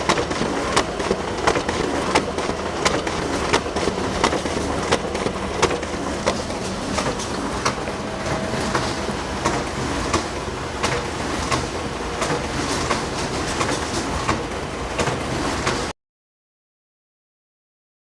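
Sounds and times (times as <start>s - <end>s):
photocopier clicking: 0.0s - 14.4s
photocopier whirring: 0.0s - 15.9s.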